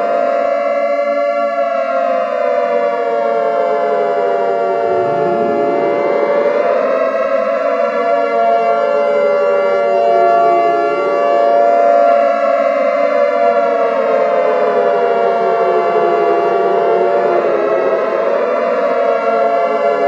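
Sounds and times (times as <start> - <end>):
warning siren wailing: 4.4 - 7.2
steady held siren tone: 4.4 - 7.5.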